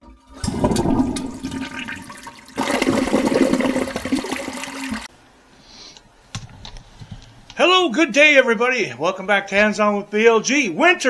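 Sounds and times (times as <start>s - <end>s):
rushing water: 0.4s - 5.1s.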